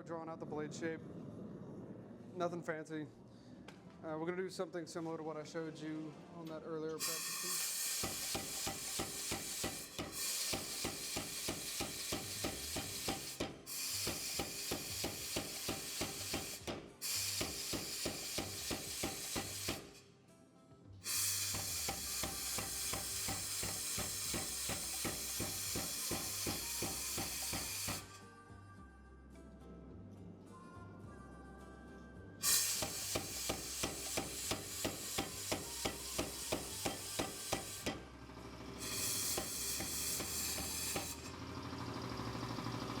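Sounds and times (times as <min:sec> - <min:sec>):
power hammer striking hot steel: 0:07.0 - 0:20.0, 0:21.1 - 0:28.2, 0:32.4 - 0:38.2, 0:38.8 - 0:41.4
steady hiss: 0:21.1 - 0:28.1.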